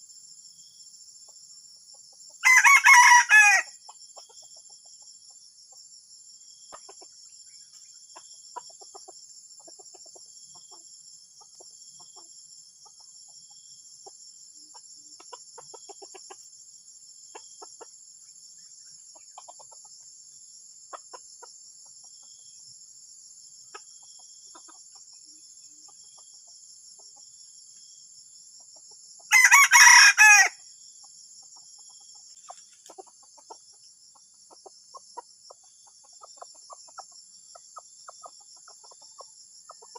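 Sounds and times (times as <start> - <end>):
rooster crow: 2.4 - 3.8, 29.3 - 30.6
junglefowl clucking: 8.1 - 13.1, 14.7 - 16.4, 19.1 - 19.9, 23.7 - 25.2, 31.6 - 39.9.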